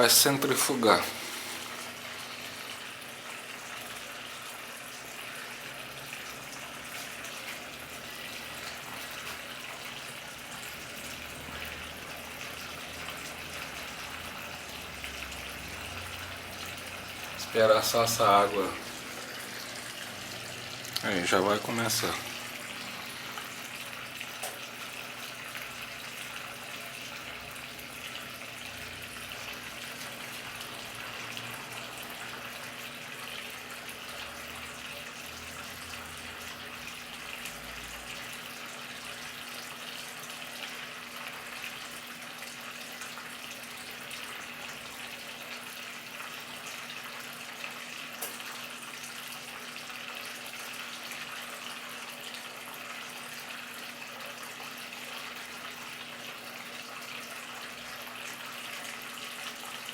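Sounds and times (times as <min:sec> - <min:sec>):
water rushing draining: 0:05.8 - 0:26.5.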